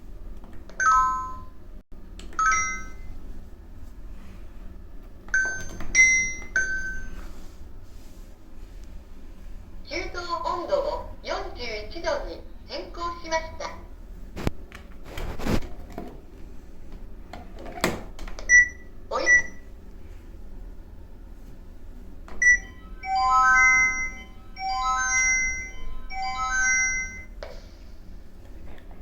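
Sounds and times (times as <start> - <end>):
high beeps: 18.5 - 19.6, 22.4 - 27.4
electronic chime melody: 22.4 - 27.4.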